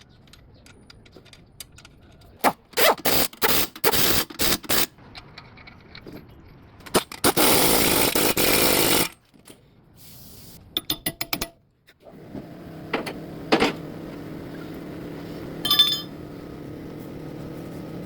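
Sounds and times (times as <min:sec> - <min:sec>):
car engine humming: 0:12.4 - 0:18.0.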